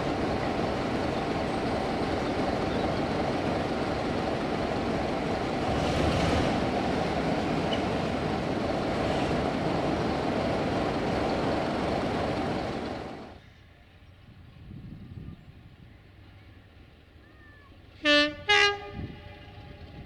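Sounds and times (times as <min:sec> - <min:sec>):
diesel train rushing: 0:00.0 - 0:13.4.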